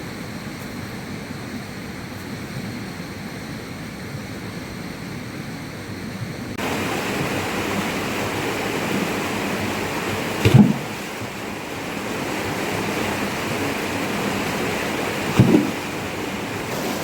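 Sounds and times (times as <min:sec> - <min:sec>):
rushing water: 0:06.6 - 0:17.0
loud low thump: 0:15.4 - 0:15.8.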